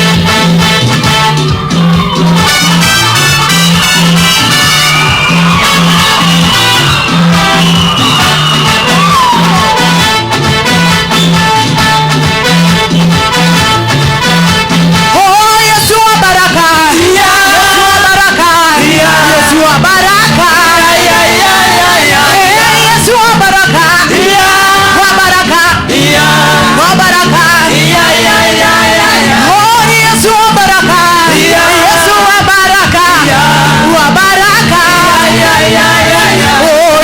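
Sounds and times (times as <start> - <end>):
upbeat gospel music with singing: 0.0 - 37.0.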